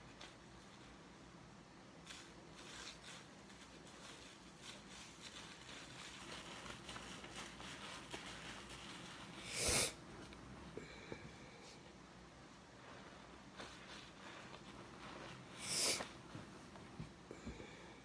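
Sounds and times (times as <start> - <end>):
wet sponge squishing: 12.7 - 16.3.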